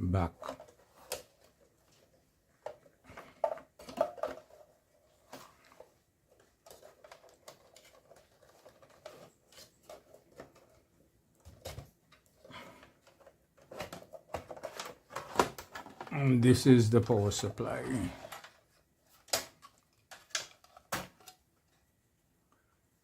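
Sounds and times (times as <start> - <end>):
metal and plastic clicks and knocks: 0.4 - 4.7, 18.2 - 21.8.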